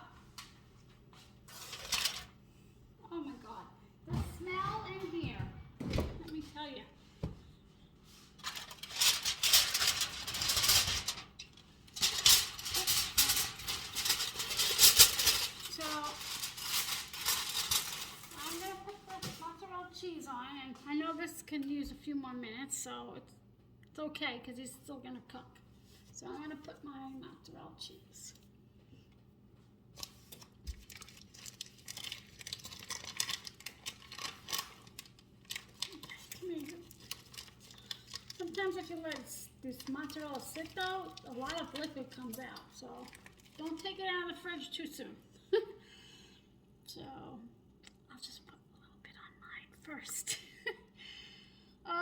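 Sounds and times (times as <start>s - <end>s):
crinkling and rustling: 0.3s - 2.4s, 8.0s - 19.8s, 30.0s - 44.3s.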